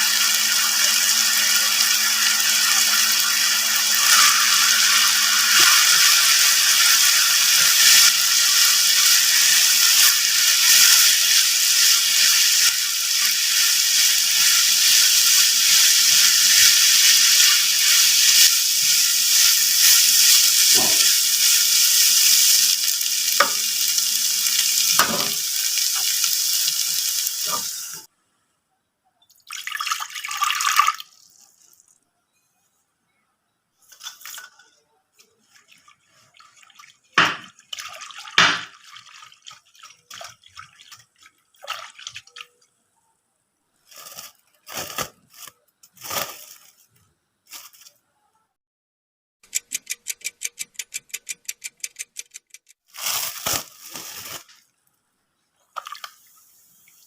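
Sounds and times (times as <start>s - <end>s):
water running: 0.0s - 28.1s, 35.4s - 42.6s.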